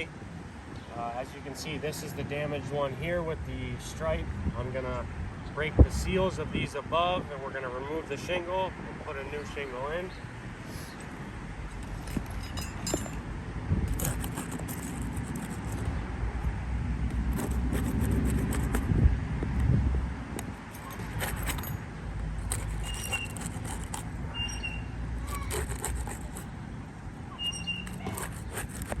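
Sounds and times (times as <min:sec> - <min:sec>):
tool scraping and clicking: 0:11.8 - 0:13.2, 0:13.9 - 0:15.9, 0:17.1 - 0:19.0, 0:20.3 - 0:24.2, 0:25.2 - 0:26.5, 0:27.7 - 0:29.0.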